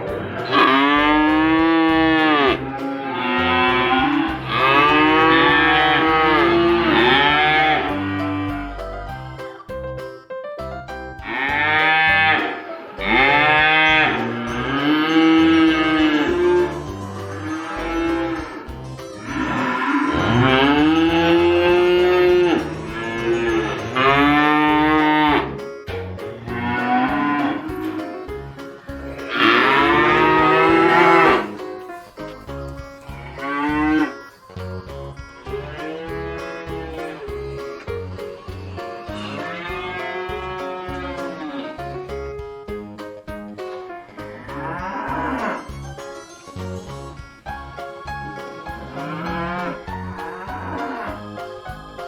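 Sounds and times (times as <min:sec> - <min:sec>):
cows mooing: 0:00.0 - 0:08.8, 0:11.3 - 0:25.6, 0:26.4 - 0:28.2, 0:29.2 - 0:31.6, 0:33.1 - 0:34.2, 0:35.5 - 0:37.3, 0:39.0 - 0:41.8, 0:44.4 - 0:45.7, 0:48.8 - 0:51.2.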